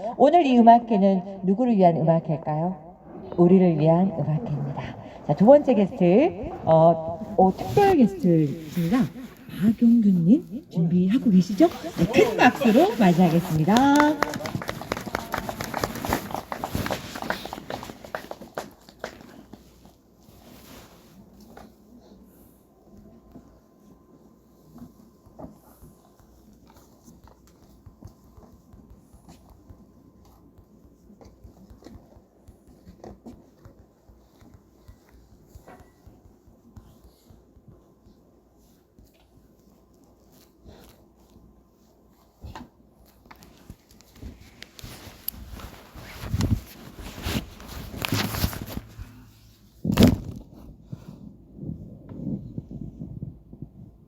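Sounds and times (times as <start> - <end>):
rustling and knocking handling noise: 11.3 - 21.8, 23.0 - 54.0
handling clicks and rustles: 42.4 - 49.2
loud thump: 49.8 - 50.4.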